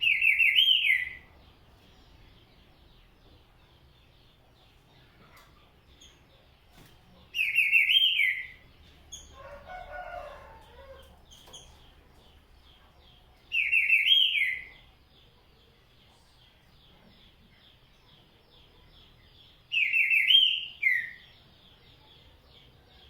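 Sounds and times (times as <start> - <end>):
bird singing rapid phrases: 0.0 - 23.0
small birds chirping: 0.0 - 23.0
distant rooster crowing: 9.3 - 11.3.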